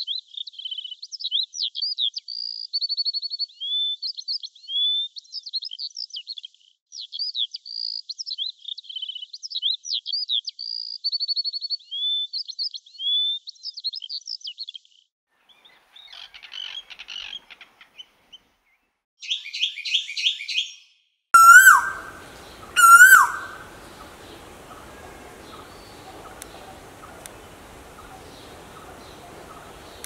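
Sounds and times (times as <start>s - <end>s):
high quick bird chattering: 21.4s - 30.0s
loud lower bird calls: 21.4s - 30.0s
sharp repeated bird notes: 21.4s - 30.0s.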